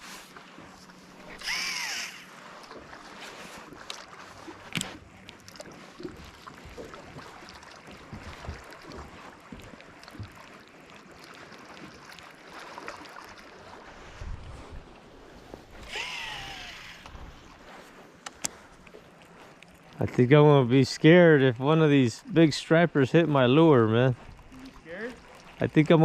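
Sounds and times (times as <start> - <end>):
faint lapping water: 0.0 - 26.0
wind buffeting microphone: 13.9 - 17.7.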